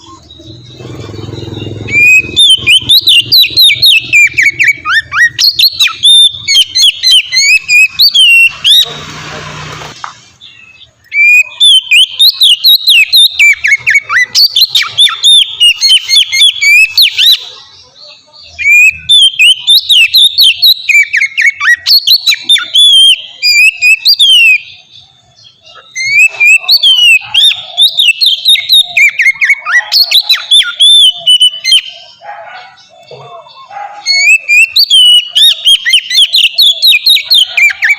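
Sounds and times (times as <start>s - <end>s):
bird singing whistled notes: 0.0s - 8.9s, 10.2s - 37.9s.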